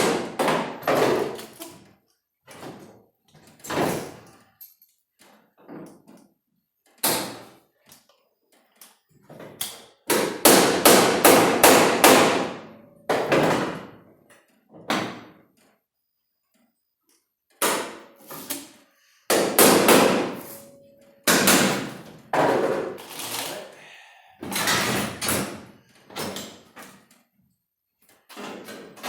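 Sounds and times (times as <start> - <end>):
hammer on sheet metal: 10.1 - 13.4, 19.3 - 20.7, 21.3 - 22.0.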